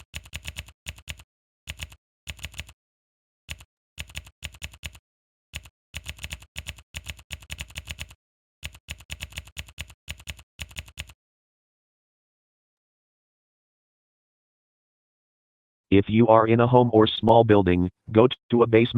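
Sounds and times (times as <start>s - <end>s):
keyboard typing: 0.0s - 2.8s, 3.5s - 5.0s, 5.6s - 11.2s.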